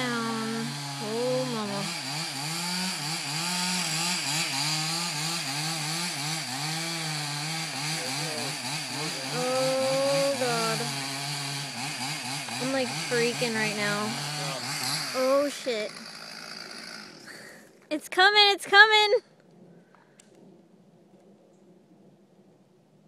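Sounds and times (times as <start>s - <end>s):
chainsaw cutting into tree: 0.0s - 17.8s.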